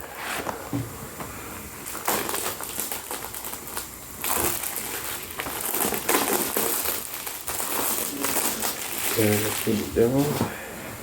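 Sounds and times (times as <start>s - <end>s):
plastic packaging crinkling: 1.8s - 10.4s.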